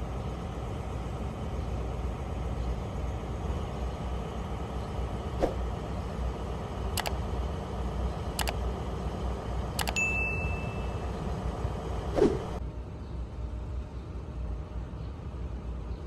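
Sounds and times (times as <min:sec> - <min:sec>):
train running rumble: 0:00.0 - 0:16.0
sharp clicks: 0:06.9 - 0:07.2, 0:08.4 - 0:08.6, 0:09.8 - 0:10.0.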